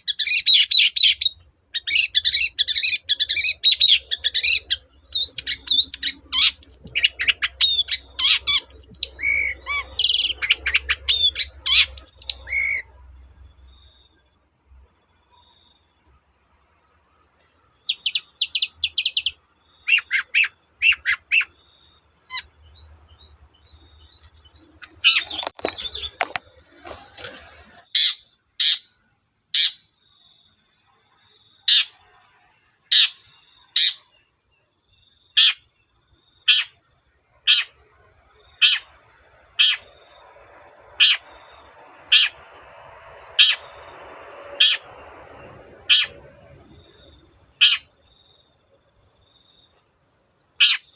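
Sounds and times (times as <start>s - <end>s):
bird singing sharp rapid notes: 24.0s - 28.9s
bird harsh chattering: 24.8s - 28.9s, 45.8s - 46.2s.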